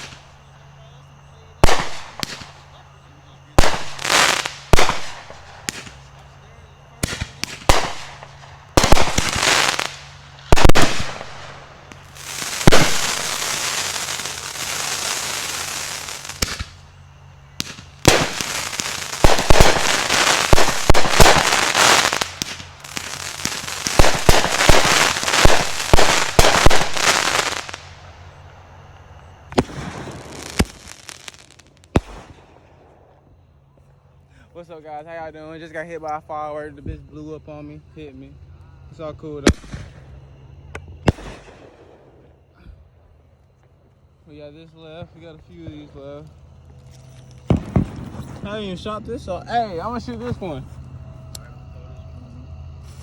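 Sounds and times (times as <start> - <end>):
firework hissing: 0.0 - 0.5, 1.6 - 2.7, 3.5 - 32.8, 52.4 - 53.0
fireworks crackling and popping: 0.0 - 0.8, 1.5 - 33.0, 39.4 - 40.1, 40.7 - 42.5, 45.0 - 51.5, 52.7 - 53.0
firework bangs: 0.0 - 33.2, 39.4 - 42.5, 46.9 - 48.9.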